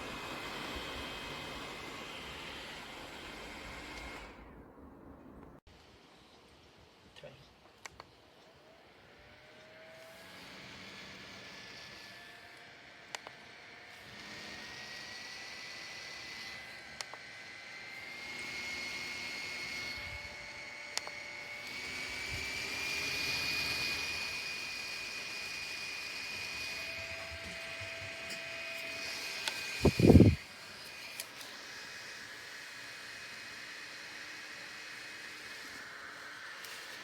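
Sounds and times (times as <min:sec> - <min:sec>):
desk fan motor whine: 0:00.0 - 0:04.8, 0:08.5 - 0:37.0
fan air rushing: 0:26.5 - 0:31.4.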